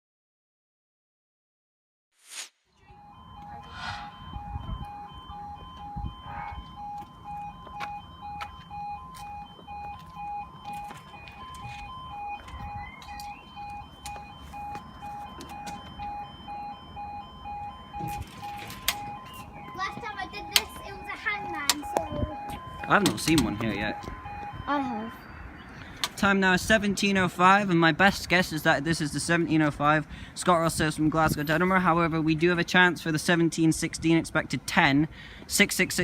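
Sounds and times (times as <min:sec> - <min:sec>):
level crossing alarm: 0:02.8 - 0:27.4.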